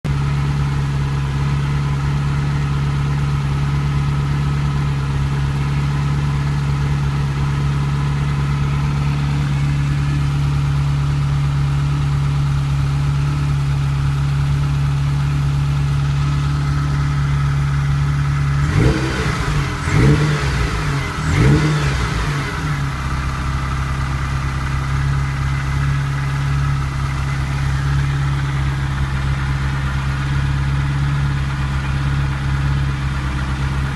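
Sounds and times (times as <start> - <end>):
car engine idling and revving: 0.1 - 33.9.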